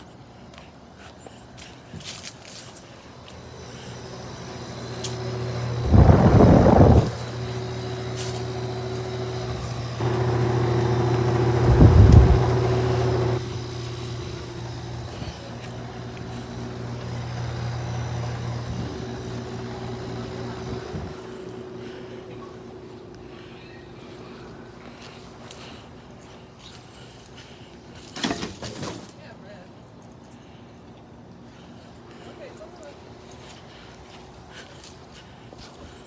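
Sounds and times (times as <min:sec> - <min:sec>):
air conditioner humming: 0:02.8 - 0:29.5.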